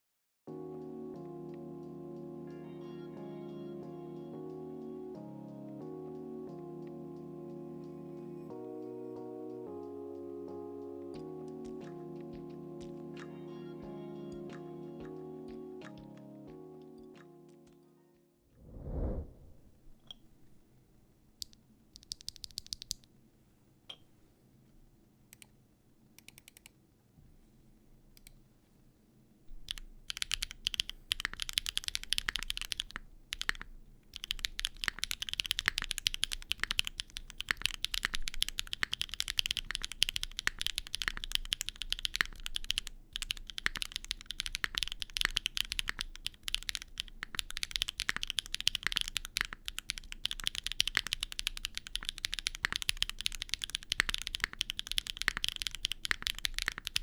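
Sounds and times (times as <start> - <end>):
clacky mechanical keyboard typing: 22.0 - 23.0, 26.2 - 26.7, 29.6 - 57.0.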